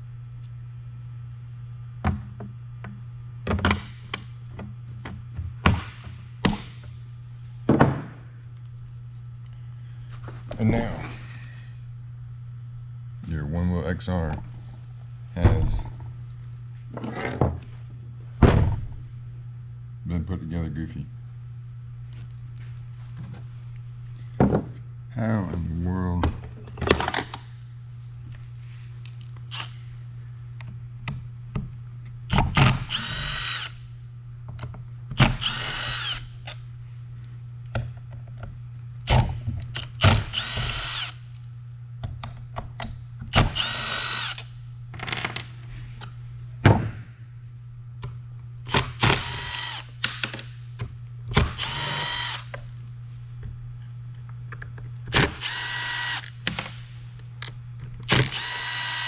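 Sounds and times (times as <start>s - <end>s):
steady low hum: 0.0s - 59.0s
cordless drill whining: 32.8s - 33.8s, 35.2s - 36.3s, 40.0s - 41.2s, 43.4s - 44.5s, 49.0s - 49.9s, 51.6s - 52.5s, 55.4s - 56.3s, 58.1s - 59.0s.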